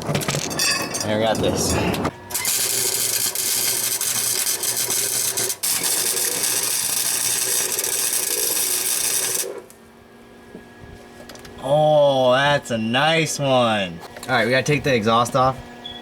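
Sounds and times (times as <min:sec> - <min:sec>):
welder arc crackling and hissing: 0:01.9 - 0:09.8.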